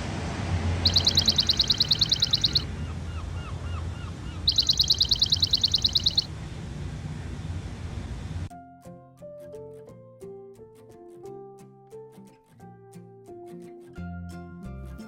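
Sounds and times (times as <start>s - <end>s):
falling bird chirps: 0.8s - 2.7s, 3.7s - 6.3s
high bird trill: 0.8s - 6.3s.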